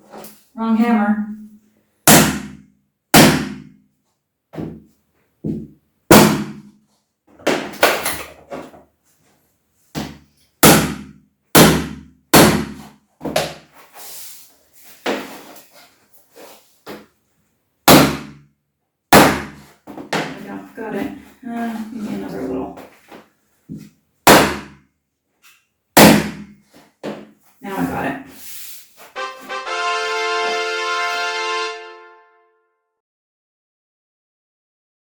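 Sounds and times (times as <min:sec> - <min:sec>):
hammer knocking floor planks: 0:04.5 - 0:06.7, 0:09.9 - 0:13.7, 0:26.0 - 0:27.3.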